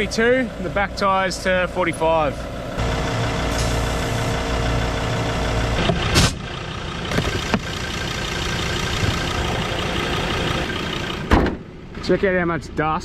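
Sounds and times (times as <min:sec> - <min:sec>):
air compressor running: 0:02.6 - 0:05.8.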